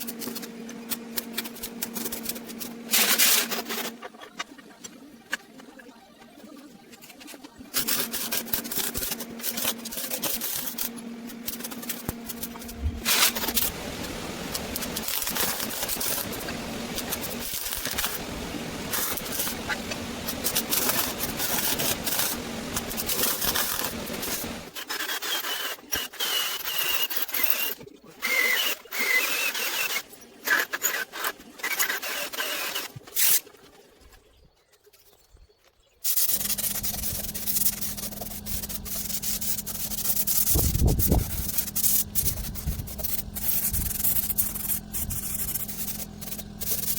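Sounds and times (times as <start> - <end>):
tool abrasively rubbing steel: 7.8 - 32.9, 36.1 - 46.9.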